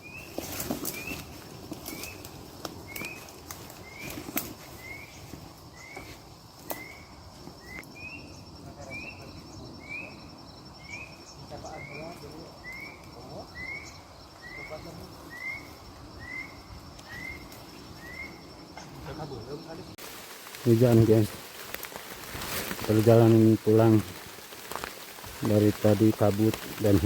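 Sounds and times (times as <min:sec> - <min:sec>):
pulsing insect trill: 0:00.0 - 0:27.0
bird chirping: 0:06.7 - 0:19.0.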